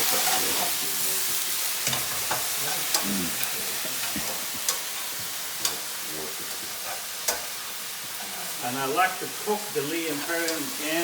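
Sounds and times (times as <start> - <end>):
mushrooms sizzling in a pan: 0.0 - 11.0
utensil clicking against pan: 1.8 - 5.9, 6.5 - 7.6, 10.2 - 10.8.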